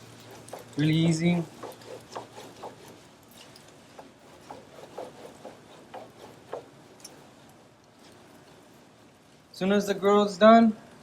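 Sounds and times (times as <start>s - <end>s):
onion scraping grill grate: 0.0s - 8.1s.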